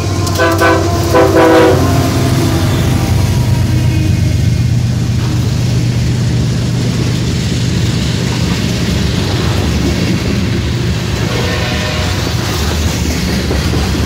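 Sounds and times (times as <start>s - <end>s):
diesel locomotives droning: 0.0s - 14.0s.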